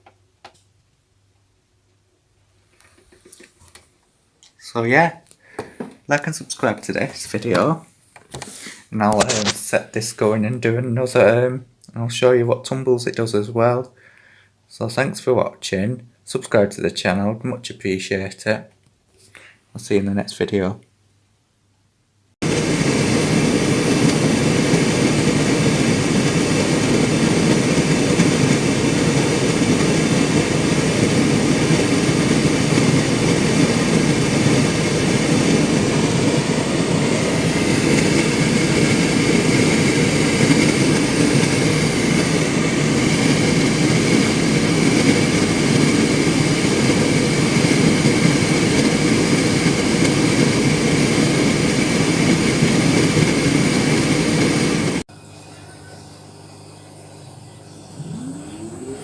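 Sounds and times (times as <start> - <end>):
tumble dryer running: 22.4 - 59.0.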